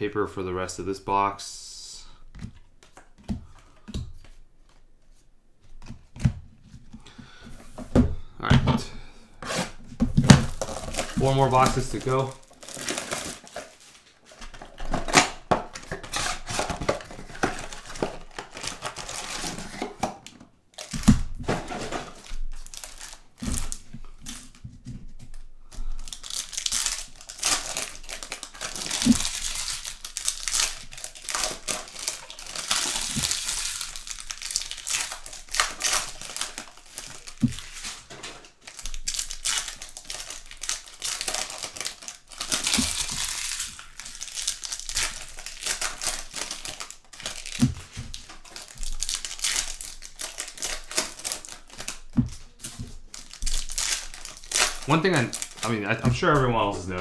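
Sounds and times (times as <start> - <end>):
plastic wrappers crinkling and tearing: 9.5 - 24.6, 25.2 - 57.0.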